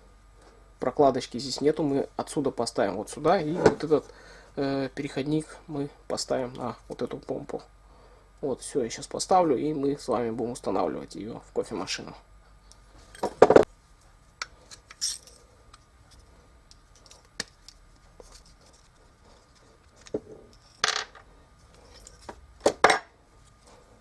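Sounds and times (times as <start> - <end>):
small parts and tools clinking: 14.4 - 23.1.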